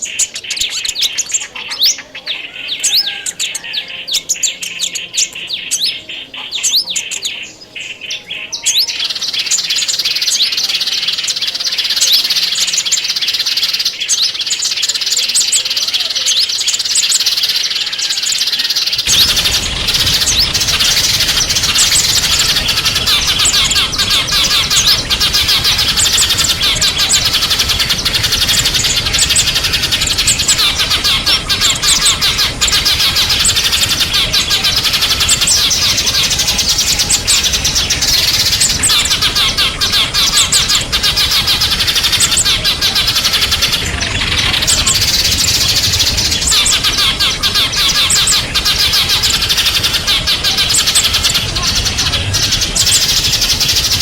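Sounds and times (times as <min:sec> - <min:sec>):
small songbirds chirping: 0:00.0 - 0:54.0
steady rushing noise: 0:19.0 - 0:54.0.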